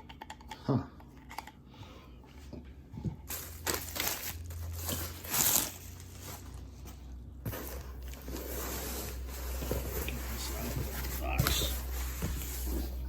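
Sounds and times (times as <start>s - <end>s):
packaging rustling and crinkling: 3.2s - 13.0s.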